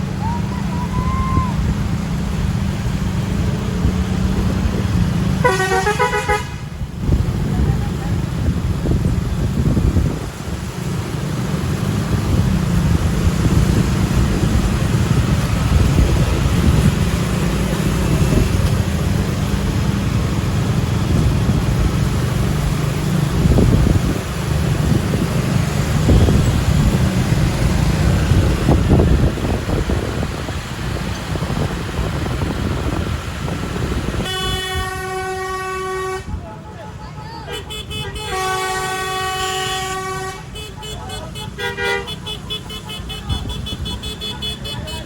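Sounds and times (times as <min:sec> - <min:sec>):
wind buffeting microphone: 0:00.0 - 0:05.4, 0:06.6 - 0:36.6
heavy traffic rumble: 0:00.0 - 0:45.0.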